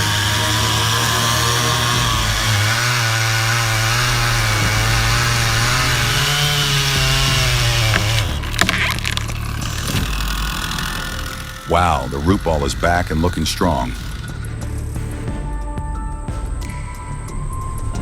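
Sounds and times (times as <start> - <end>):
chainsaw cutting wood: 0.0 - 15.1
sharp cracks and knocks: 0.9 - 11.2.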